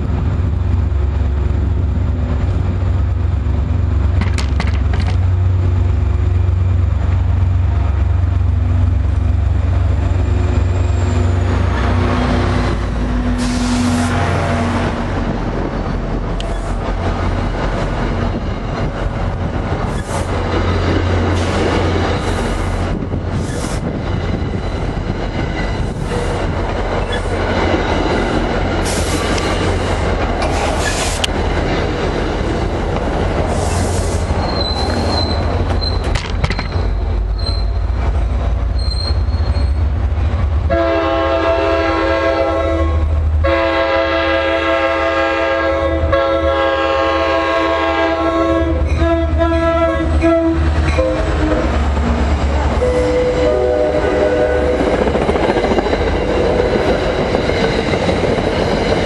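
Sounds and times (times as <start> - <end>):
train rumbling past: 0.0 - 59.0
high wheel squeal: 33.6 - 37.8, 38.8 - 39.9
locomotive air horn chord: 40.7 - 51.6, 52.8 - 54.8.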